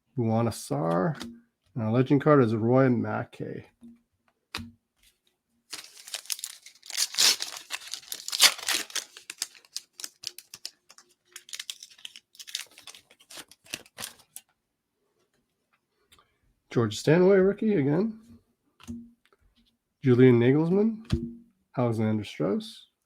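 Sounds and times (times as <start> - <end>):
wrapper tearing and crinkling: 5.7 - 14.4.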